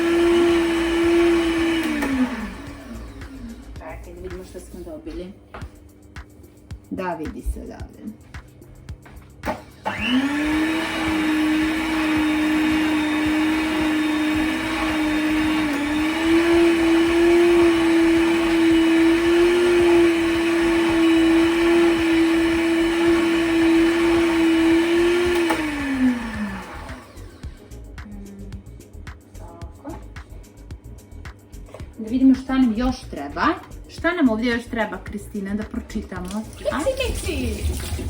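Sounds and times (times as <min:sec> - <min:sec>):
electric mixer motor whine: 0:00.0 - 0:03.8, 0:09.4 - 0:27.8.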